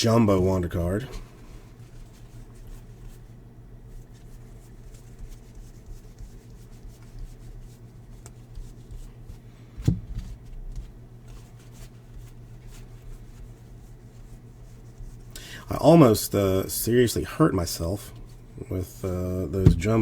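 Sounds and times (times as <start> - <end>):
steady low hum: 15.0 - 20.0
sharp knock: 19.6 - 20.0.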